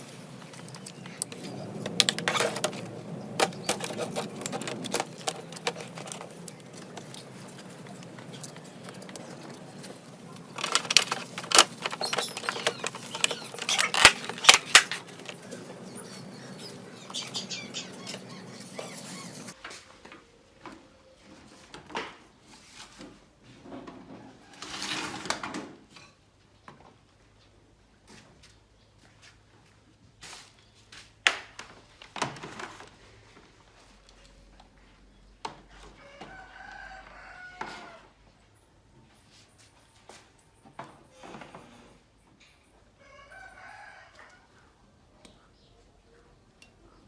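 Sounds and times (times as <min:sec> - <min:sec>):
small hard objects clicking: 0:00.4 - 0:15.5.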